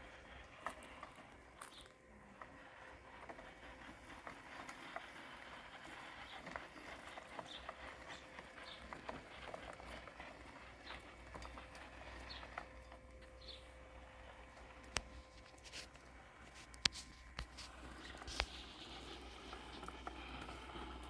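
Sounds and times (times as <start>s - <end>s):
robotic lawn mower humming: 0.0s - 21.0s
clicks and ticks in grass: 14.8s - 21.0s.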